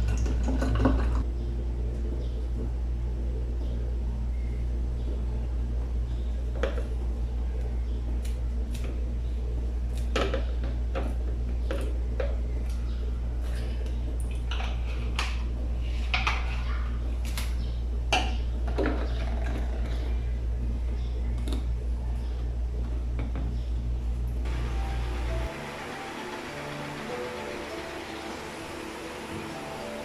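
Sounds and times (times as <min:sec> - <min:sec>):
steady low hum: 0:19.9 - 0:30.0.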